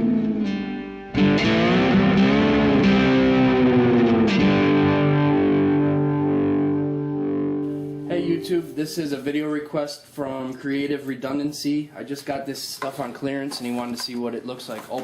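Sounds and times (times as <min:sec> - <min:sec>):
distorted electric guitar: 0:00.0 - 0:08.8.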